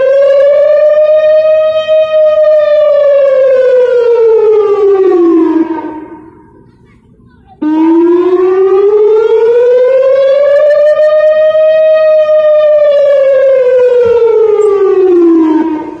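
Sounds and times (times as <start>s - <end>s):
warning siren wailing: 0.0s - 6.6s, 7.6s - 16.0s.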